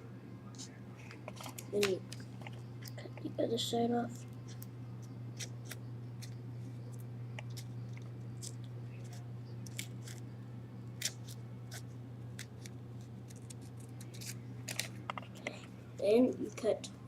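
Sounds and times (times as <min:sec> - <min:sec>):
steady low hum: 0:00.0 - 0:17.0
scissors snipping paper: 0:07.4 - 0:10.2, 0:11.0 - 0:15.5.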